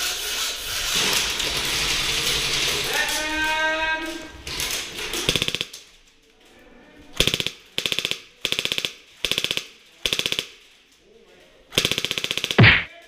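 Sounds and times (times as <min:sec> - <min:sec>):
airsoft gun full-auto bursts: 0:05.3 - 0:05.7, 0:07.2 - 0:10.5, 0:11.8 - 0:12.9.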